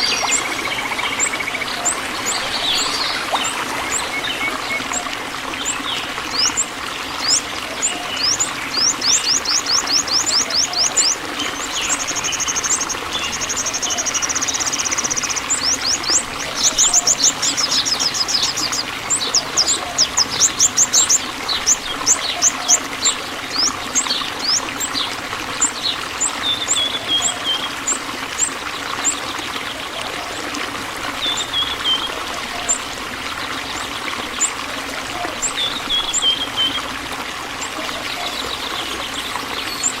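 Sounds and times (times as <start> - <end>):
trickling hiss: 0.0 - 26.8
small birds chirping: 0.0 - 37.0.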